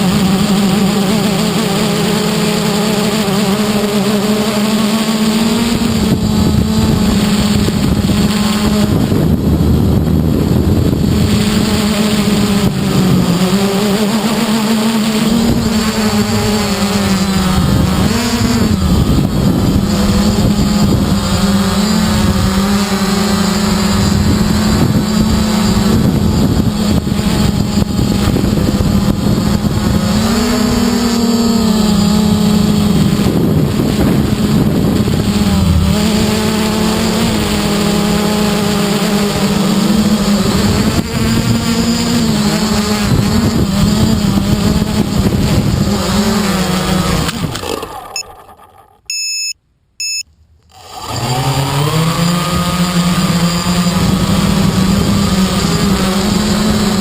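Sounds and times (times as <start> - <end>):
quadcopter motors buzzing: 0.0 - 57.0
wind buffeting microphone: 5.4 - 13.8, 15.2 - 47.6.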